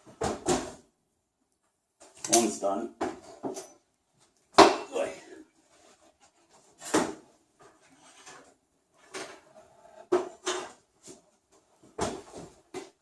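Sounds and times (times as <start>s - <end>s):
metal cake pans clattering: 6.8s - 10.9s.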